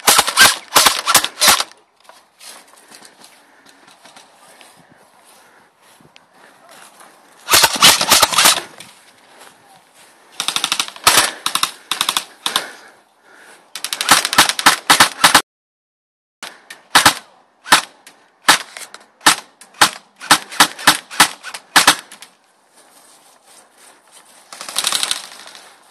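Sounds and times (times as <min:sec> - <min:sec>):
airsoft guns firing: 0:00.0 - 0:01.7, 0:07.5 - 0:08.7, 0:10.4 - 0:12.8, 0:13.8 - 0:15.4, 0:16.9 - 0:22.2, 0:24.5 - 0:25.6.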